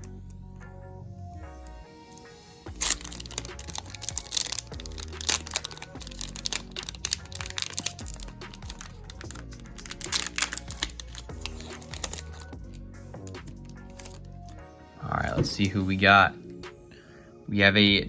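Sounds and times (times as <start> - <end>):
background music: 0.0 - 18.0
cards being handled: 2.1 - 14.6, 15.2 - 15.8
plastic wrapper crinkling: 2.2 - 12.6, 13.2 - 14.6.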